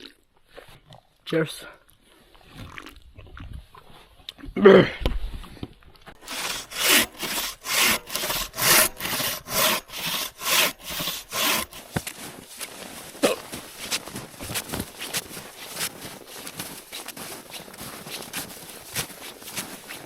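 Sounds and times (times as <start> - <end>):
hand saw cutting wood: 6.2 - 12.8.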